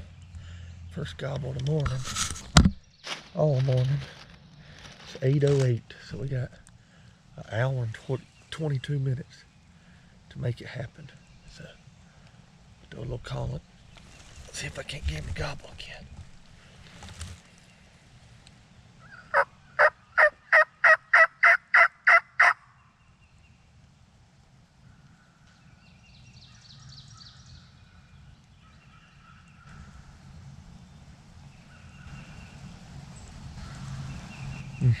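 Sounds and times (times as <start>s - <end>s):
distant turkey gobbling: 19.0s - 22.7s
turkey call yelps: 19.0s - 22.7s.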